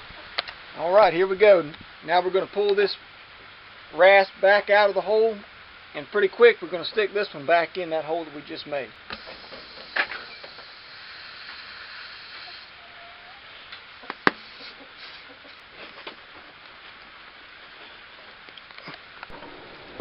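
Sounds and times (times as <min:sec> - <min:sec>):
air hissing from puncture: 0:09.1 - 0:12.8, 0:13.5 - 0:15.9.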